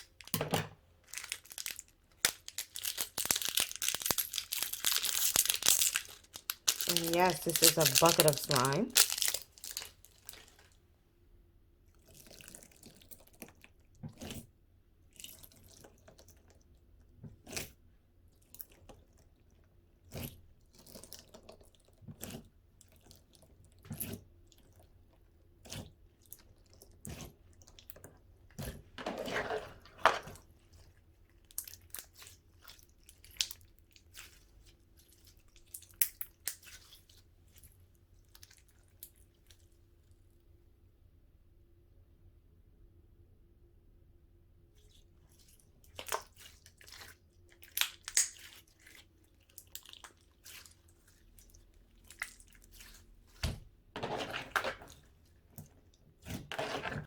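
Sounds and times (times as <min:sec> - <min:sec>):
slime squelch: 0:00.0 - 0:10.8, 0:11.8 - 0:40.3, 0:44.7 - 0:57.0
slime being squished by hand: 0:01.0 - 0:10.7, 0:28.6 - 0:39.6, 0:44.9 - 0:57.0.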